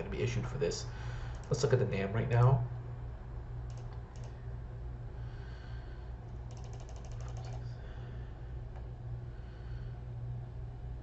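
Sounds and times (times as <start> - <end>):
steady low hum: 0.0 - 11.0
computer keyboard keystrokes: 3.7 - 4.4, 6.5 - 7.6.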